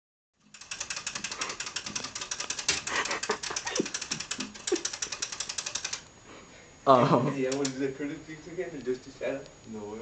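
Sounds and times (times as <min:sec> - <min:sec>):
fast sharp clicking: 0:00.4 - 0:06.1, 0:07.4 - 0:07.9.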